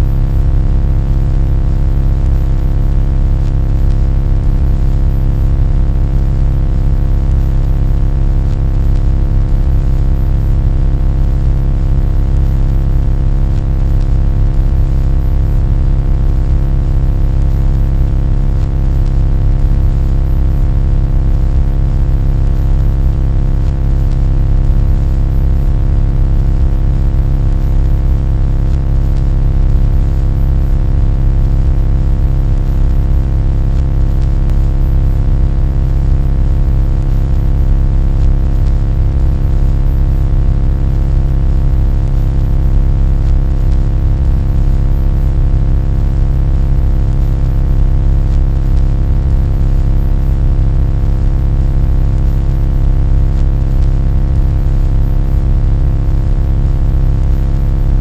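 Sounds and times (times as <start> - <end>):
low-pitched droning hum: 0.0 - 0.6, 2.2 - 32.7, 42.1 - 45.5.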